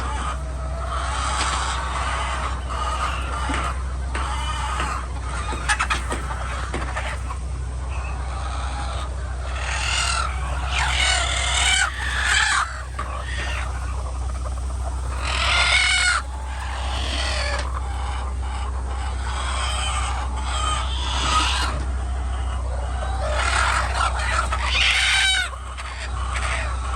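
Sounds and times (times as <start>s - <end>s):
chickens clucking and squawking: 0.0s - 26.9s
steady low hum: 0.0s - 26.9s.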